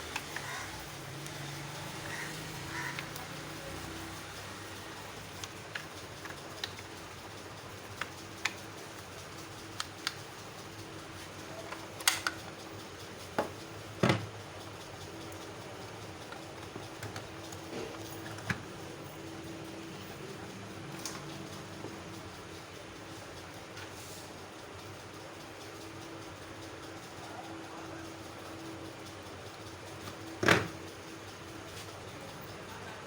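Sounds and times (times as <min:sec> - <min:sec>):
small parts clicking and tapping: 0:00.0 - 0:24.0, 0:24.6 - 0:33.0
faint steady hum: 0:00.0 - 0:33.0.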